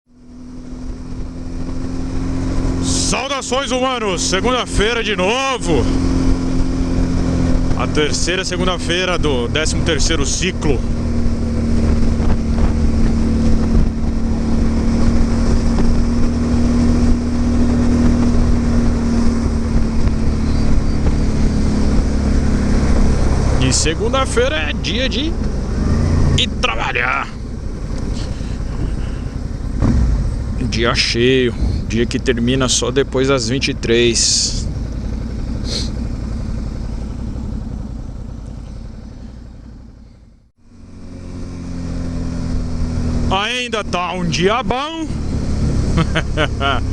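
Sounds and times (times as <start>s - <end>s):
motorcycle engine running: 0.0s - 46.9s.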